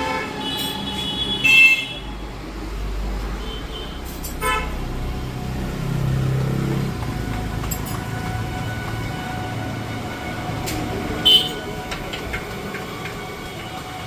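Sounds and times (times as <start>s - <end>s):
vehicle horn toot: 0.0s - 2.2s, 3.4s - 4.8s, 11.2s - 11.7s
passing vehicle engine rumble: 2.0s - 14.0s.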